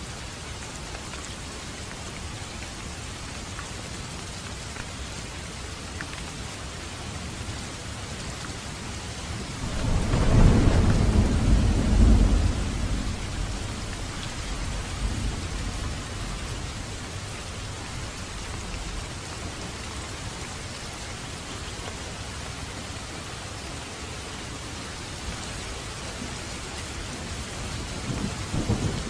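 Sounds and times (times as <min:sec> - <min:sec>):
steady rain: 0:00.0 - 0:29.0
thunder rumbling: 0:09.5 - 0:19.0, 0:27.8 - 0:29.0.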